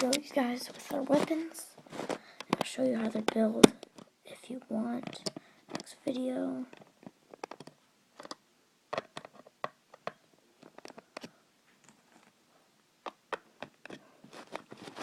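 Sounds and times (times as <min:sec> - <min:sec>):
plastic pieces clicking and tapping: 0:02.1 - 0:04.1, 0:05.0 - 0:12.3, 0:13.0 - 0:14.7.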